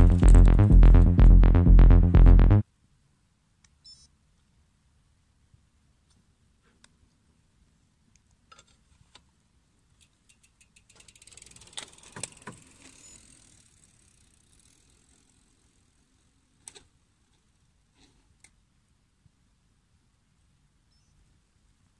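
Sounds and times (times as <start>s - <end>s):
bicycle freehub ratchet ticking: 10.2s - 16.0s.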